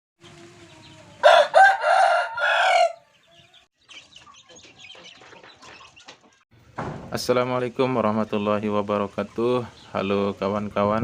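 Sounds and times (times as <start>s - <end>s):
rooster crowing: 1.2s - 3.1s.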